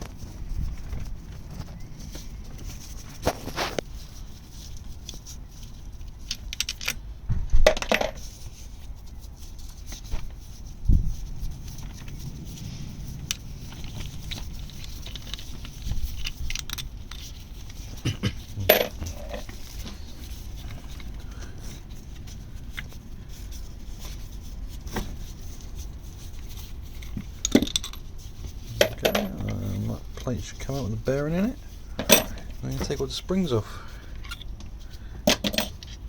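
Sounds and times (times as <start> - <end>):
metal tools clinking: 18.6 - 19.6, 28.7 - 34.5, 35.3 - 36.0.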